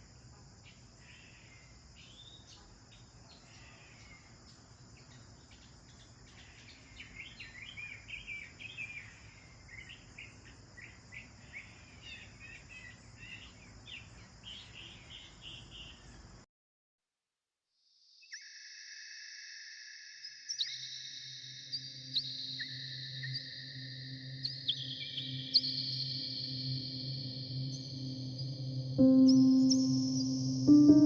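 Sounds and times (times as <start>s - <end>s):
high insect drone: 0.0s - 16.2s, 20.8s - 31.0s
sparrows chirping: 0.6s - 16.3s.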